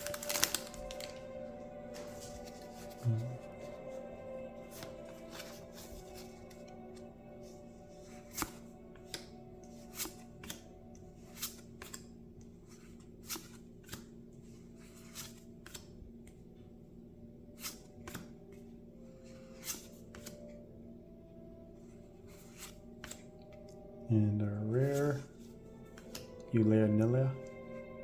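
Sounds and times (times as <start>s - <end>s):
trading cards snapping: 0.0s - 1.2s.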